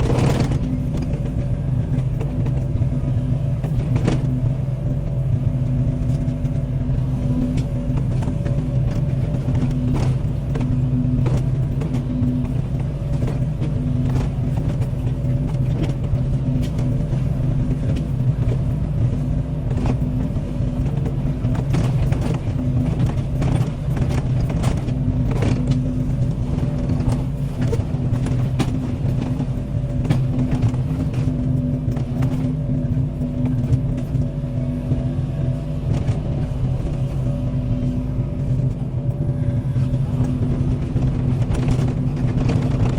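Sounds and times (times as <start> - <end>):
excavator diesel engine running: 0.0 - 42.9.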